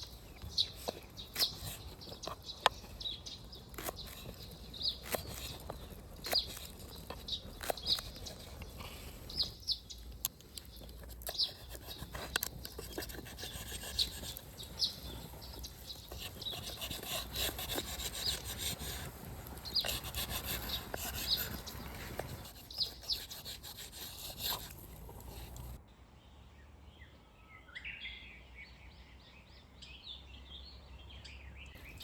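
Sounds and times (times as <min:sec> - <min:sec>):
rasping and scraping on wood: 0:00.0 - 0:09.6, 0:10.2 - 0:25.8.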